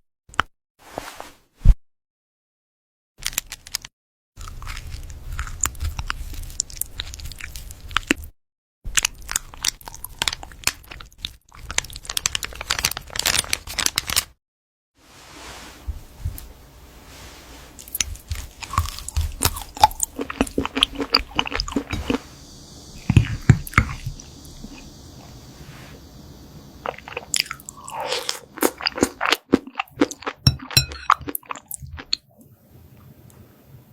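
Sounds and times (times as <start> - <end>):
cat chewing crunchy food: 17.8 - 25.4.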